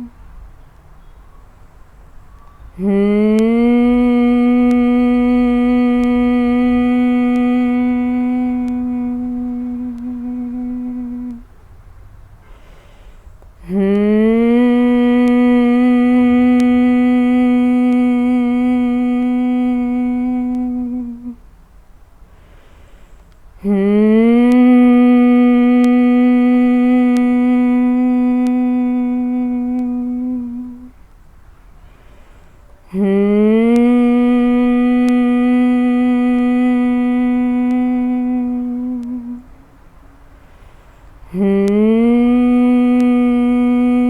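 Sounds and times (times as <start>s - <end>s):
woman humming: 0.0s - 0.3s, 2.7s - 11.5s, 13.6s - 21.5s, 23.6s - 31.0s, 32.8s - 39.8s, 41.2s - 44.0s
breath in through the nose: 12.4s - 13.4s.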